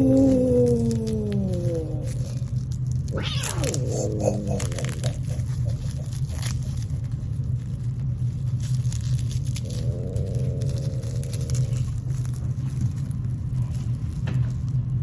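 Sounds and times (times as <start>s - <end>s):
cat meowing: 3.1s - 5.0s.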